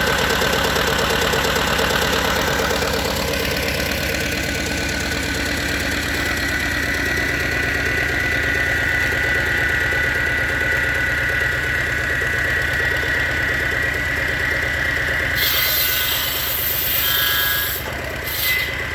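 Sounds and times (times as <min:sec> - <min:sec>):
diesel generator engine knocking: 0:00.0 - 0:18.9
saw cutting wood: 0:14.4 - 0:18.9.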